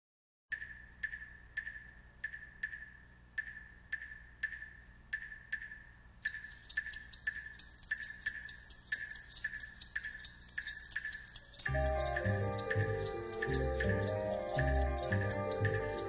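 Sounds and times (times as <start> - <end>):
wooden percussion knocking: 3.4 - 16.0
maracas shaking: 6.2 - 16.0.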